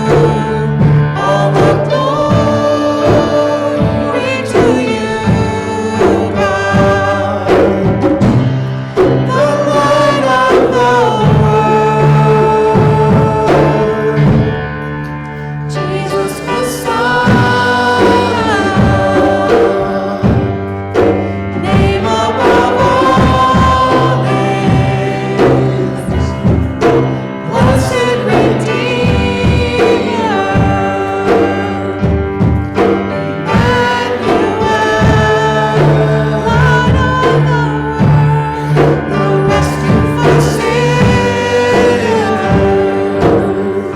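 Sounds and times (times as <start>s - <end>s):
instrumental backing: 0.0s - 43.9s
steady drum beat: 0.0s - 43.9s
voices singing worship song: 0.0s - 43.9s.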